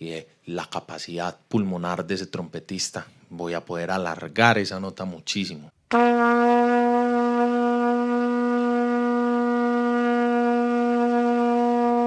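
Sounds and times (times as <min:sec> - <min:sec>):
trumpet holding long note: 0:05.9 - 0:12.0.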